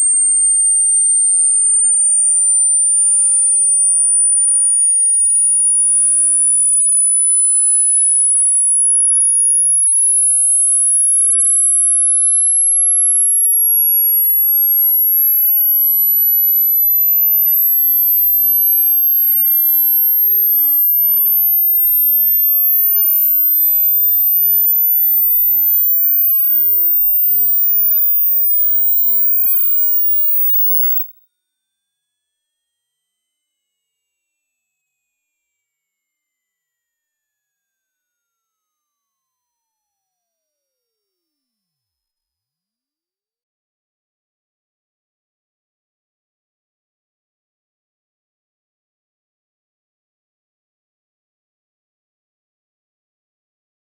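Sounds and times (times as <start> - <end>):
high-pitched sine test tone: 0.0 - 31.2.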